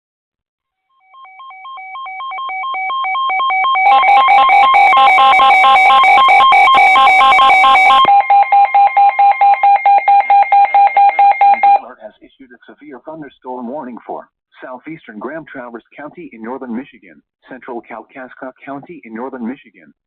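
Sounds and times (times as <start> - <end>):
weather alert radio beeping: 2.2 - 11.8.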